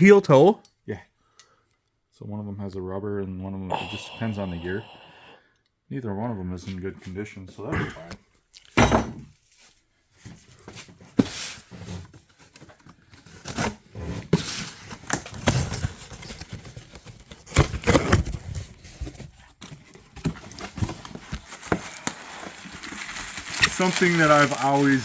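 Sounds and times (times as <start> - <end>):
tape and cardboard tearing: 13.2 - 25.0
packaging crinkling: 19.7 - 25.0.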